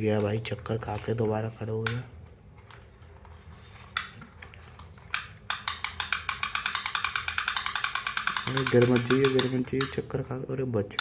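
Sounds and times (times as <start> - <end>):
spinning toy clicking: 5.1 - 10.0.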